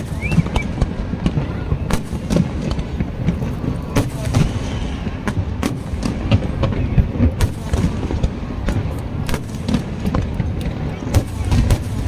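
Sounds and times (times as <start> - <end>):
fireworks bangs and cracks: 0.0 - 12.0.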